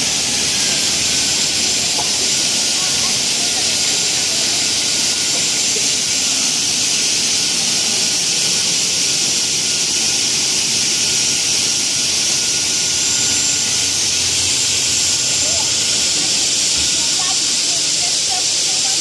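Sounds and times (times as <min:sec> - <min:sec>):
cutting saw running: 0:00.0 - 0:19.0.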